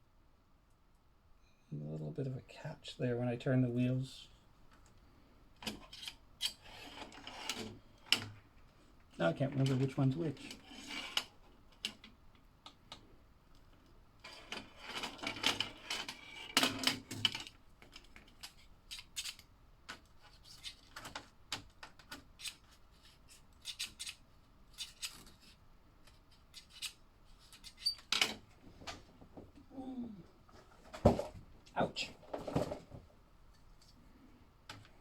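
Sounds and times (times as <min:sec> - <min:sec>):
plastic parts clicking and rattling: 0:14.2 - 0:28.4.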